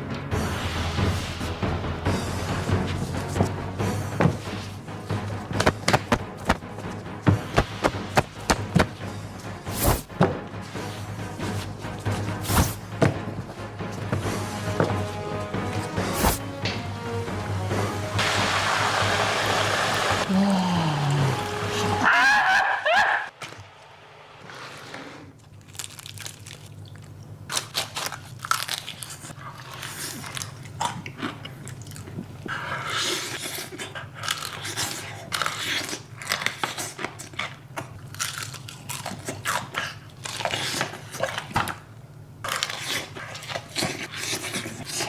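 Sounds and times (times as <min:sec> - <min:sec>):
crunchy food being chewed: 0:25.4 - 0:45.0.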